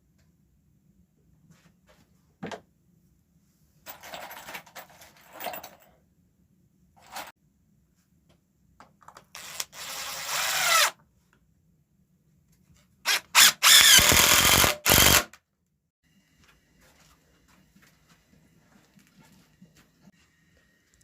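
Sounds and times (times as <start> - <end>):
power drill drilling into wood: 9.4 - 10.9, 13.1 - 15.3.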